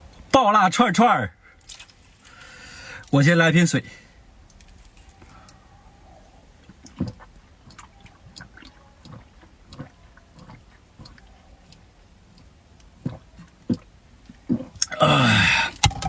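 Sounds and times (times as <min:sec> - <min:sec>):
liquid sloshing: 0:01.4 - 0:03.2, 0:04.0 - 0:16.0.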